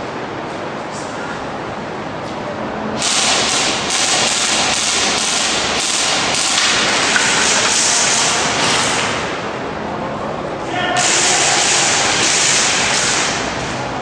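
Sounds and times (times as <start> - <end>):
airsoft guns firing rapidly: 3.0 - 9.2, 11.0 - 13.6.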